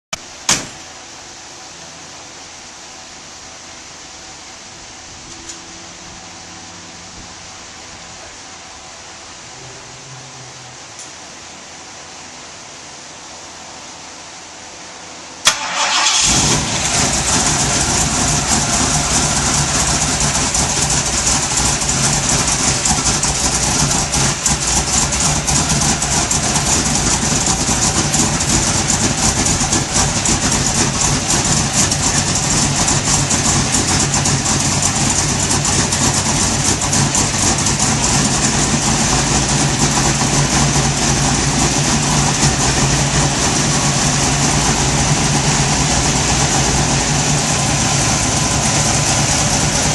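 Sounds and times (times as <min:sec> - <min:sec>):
sharp click: 0:00.5 - 0:00.8
car engine starting and running: 0:15.4 - 0:49.9.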